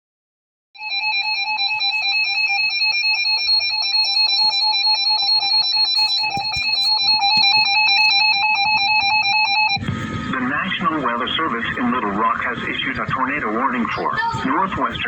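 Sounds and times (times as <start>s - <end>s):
warbling electronic alarm tone: 0.8s - 9.8s.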